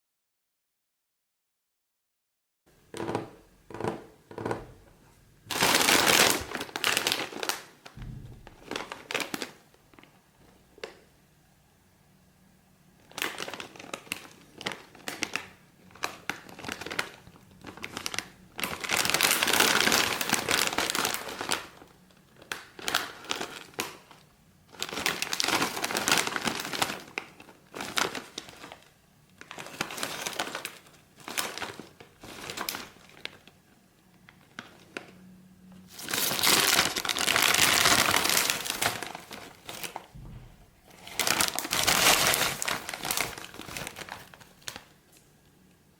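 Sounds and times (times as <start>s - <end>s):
foil snack bag crinkling: 5.5s - 7.8s, 13.0s - 33.5s, 35.9s - 40.1s, 40.8s - 45.2s.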